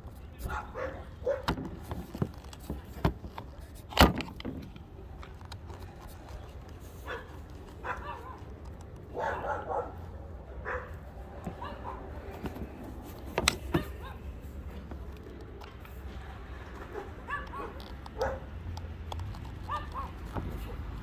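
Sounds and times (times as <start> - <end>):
clicks and knocks from prying: 1.3 - 6.9, 11.4 - 16.0.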